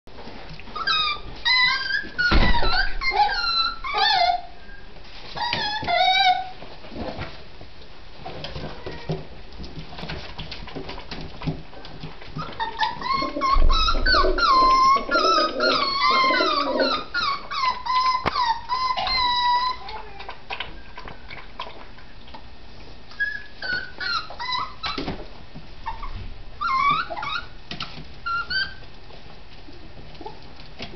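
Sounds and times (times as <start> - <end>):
puppies whimpering and whining: 0.7 - 6.6, 12.3 - 21.2, 23.1 - 25.2, 25.8 - 27.6, 28.2 - 28.9
light ticking and scuffling: 28.8 - 30.9.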